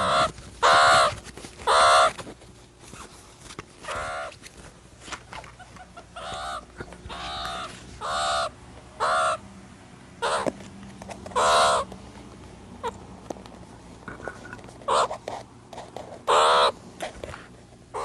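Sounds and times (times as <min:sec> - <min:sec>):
meerkats calling: 0:00.0 - 0:02.2, 0:03.8 - 0:04.4, 0:05.4 - 0:09.4, 0:10.2 - 0:10.6, 0:11.3 - 0:11.9, 0:14.8 - 0:15.2, 0:16.2 - 0:16.8.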